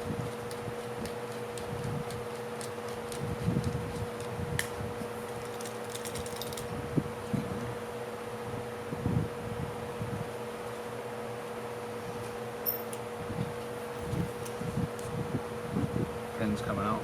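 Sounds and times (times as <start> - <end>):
steady background hum: 0.0 - 17.0
hand tools clicking and tapping: 0.5 - 4.7.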